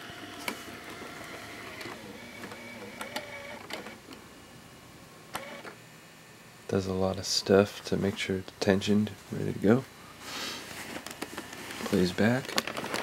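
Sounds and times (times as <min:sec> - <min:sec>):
camcorder tape motor whir: 0:00.0 - 0:04.4, 0:05.3 - 0:05.9.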